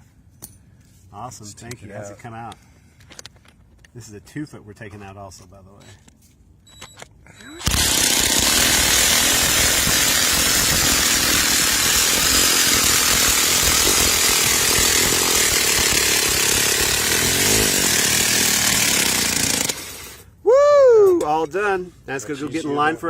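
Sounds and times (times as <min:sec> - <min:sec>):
cordless power tool running: 0:07.6 - 0:20.2
metal stake grinding through sand: 0:07.7 - 0:20.3.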